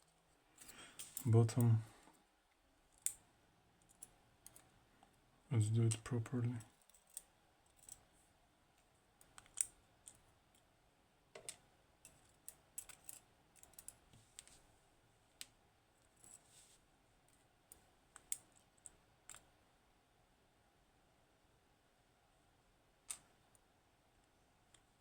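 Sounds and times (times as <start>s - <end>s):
small metal clicks and ticks: 3.0s - 3.2s, 5.9s - 8.0s, 9.2s - 10.6s, 11.4s - 14.5s.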